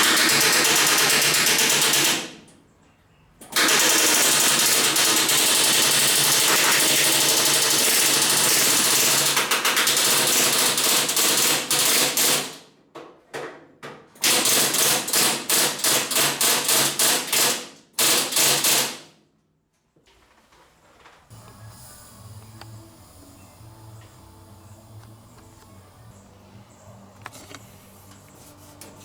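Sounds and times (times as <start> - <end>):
pneumatic rivet gun hammering: 0.0 - 2.3, 3.5 - 12.6, 14.2 - 19.0.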